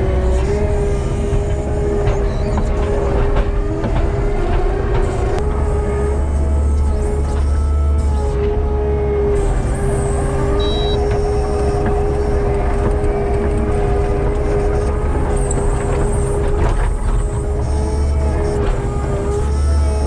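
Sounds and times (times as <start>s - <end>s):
diesel engine drone: 0.0s - 20.0s
steady machine whine: 0.0s - 20.0s.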